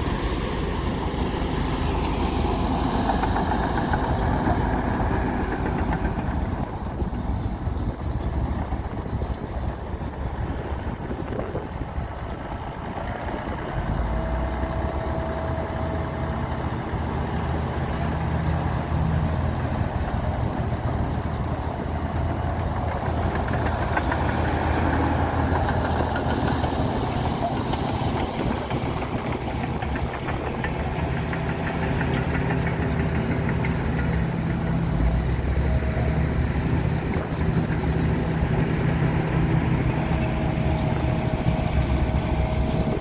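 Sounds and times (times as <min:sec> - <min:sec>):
bulldozer diesel engine running: 0:00.0 - 0:43.0.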